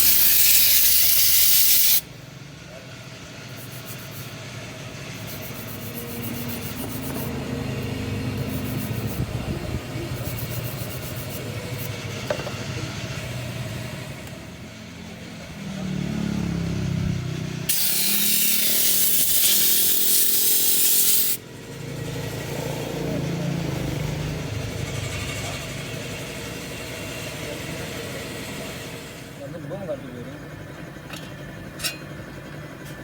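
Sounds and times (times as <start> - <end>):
loud hiss: 0.0 - 2.0, 17.7 - 21.4
scooter engine running unevenly: 2.7 - 17.7.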